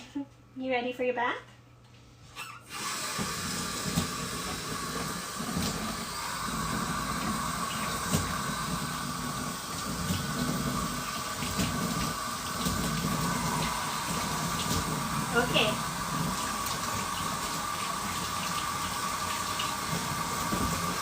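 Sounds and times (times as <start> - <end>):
running water hissing: 2.6 - 21.0.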